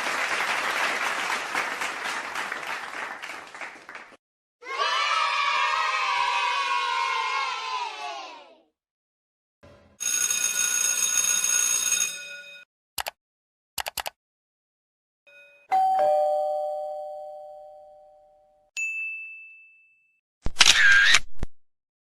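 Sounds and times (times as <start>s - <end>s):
quick clicks: 13.8s - 14.2s
doorbell chime: 15.3s - 20.2s
high ding: 15.3s - 20.2s.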